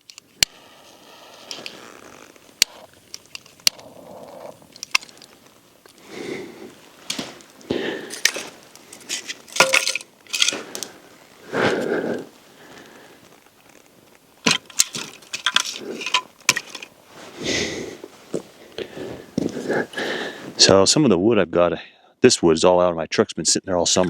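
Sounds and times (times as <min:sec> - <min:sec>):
rustling: 0:00.0 - 0:20.6
firewood cracking and knocking: 0:01.6 - 0:17.1.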